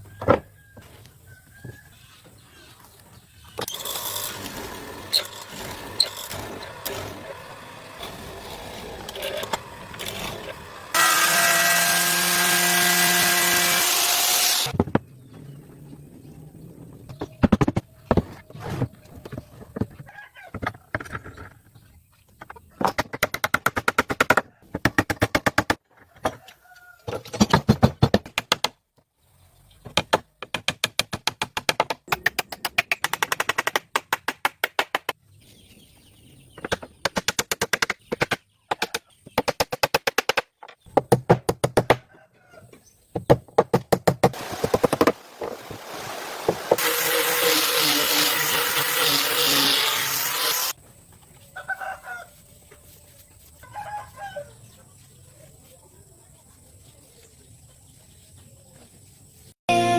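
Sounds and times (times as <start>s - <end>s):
power tool whirring: 3.7s - 14.7s, 46.3s - 50.8s.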